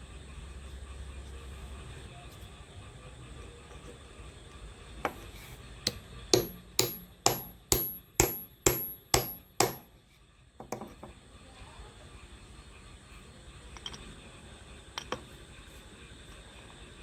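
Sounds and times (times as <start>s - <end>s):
hammer striking metal: 5.9s - 9.9s.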